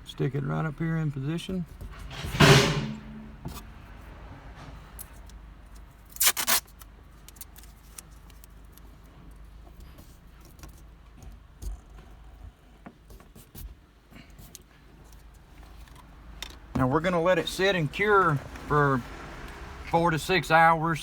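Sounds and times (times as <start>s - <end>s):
masking tape rustling scrape: 6.1s - 8.5s.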